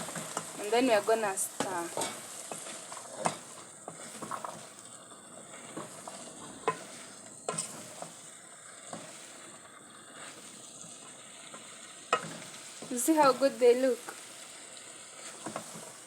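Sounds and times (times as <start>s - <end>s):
vegetables sizzling in a pot: 0.0s - 16.0s
spoon scraping and knocking pot: 1.6s - 4.7s, 5.7s - 8.1s, 11.5s - 13.0s.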